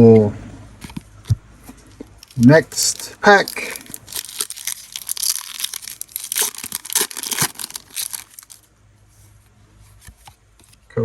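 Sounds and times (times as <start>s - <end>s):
foil wrapper tearing and crinkling: 2.2s - 8.7s.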